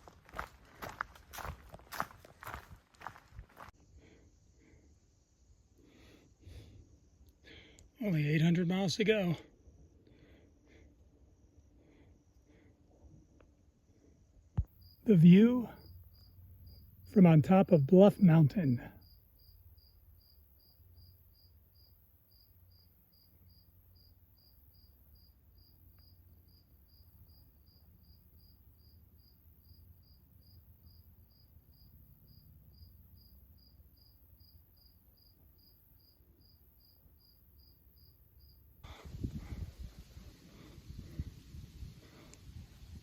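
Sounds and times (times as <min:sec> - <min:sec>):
insect chirping: 0:00.3 - 0:43.0
low wind rumble: 0:38.9 - 0:43.0.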